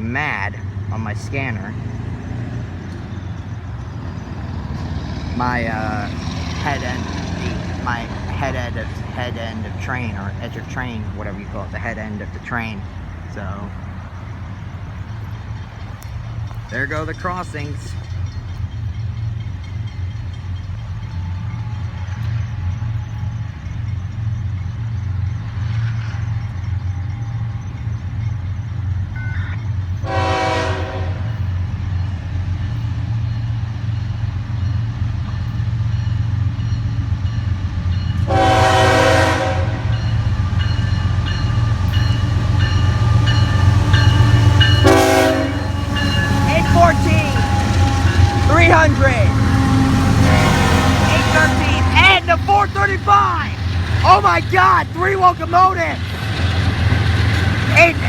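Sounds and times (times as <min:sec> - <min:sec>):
train locomotives rumbling: 0:00.0 - 0:58.0
train horn blasts: 0:30.0 - 0:31.5, 0:38.2 - 0:40.1, 0:42.7 - 0:54.5.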